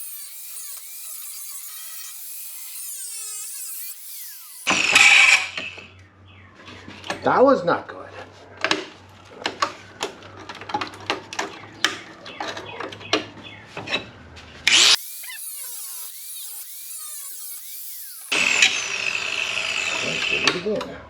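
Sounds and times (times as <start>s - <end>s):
power cutting tool whine: 0.0s - 5.9s, 14.7s - 20.8s.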